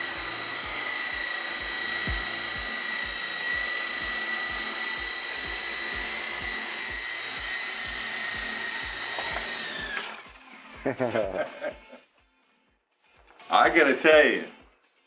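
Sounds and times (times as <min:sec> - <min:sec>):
low rotor thumps: 0:00.0 - 0:10.0
rc helicopter whining: 0:00.0 - 0:12.0.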